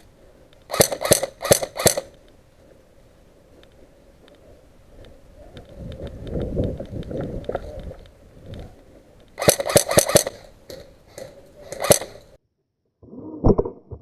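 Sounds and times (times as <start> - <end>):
airsoft gun shots: 0.7 - 2.1, 9.4 - 10.5, 11.8 - 12.2
low rumbling movement noise: 2.1 - 9.4.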